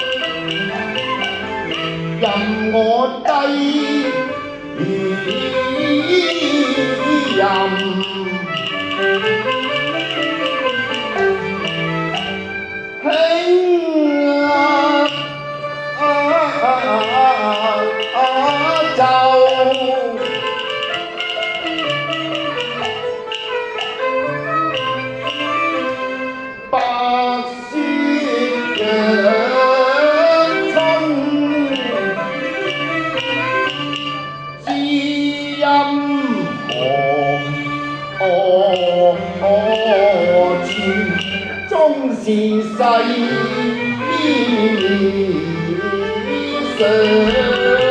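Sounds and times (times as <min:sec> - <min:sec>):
light percussive taps: 0:00.0 - 0:03.4, 0:04.8 - 0:13.3, 0:14.8 - 0:27.0, 0:27.8 - 0:34.9, 0:36.2 - 0:47.9
opera music with sliding melody: 0:00.0 - 0:47.9.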